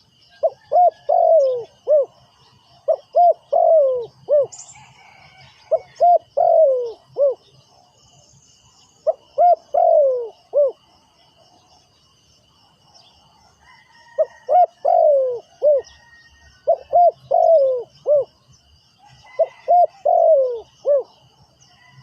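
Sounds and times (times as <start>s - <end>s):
dove cooing: 0.0s - 7.7s, 9.0s - 10.9s, 14.1s - 18.4s, 19.1s - 21.2s.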